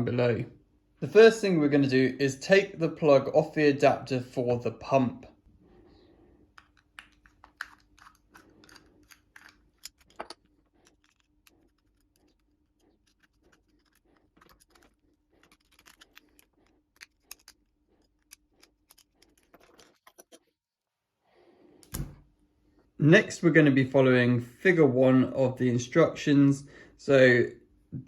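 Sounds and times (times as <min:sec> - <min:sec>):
clicks and scrapes of cable handling: 0:06.5 - 0:20.5.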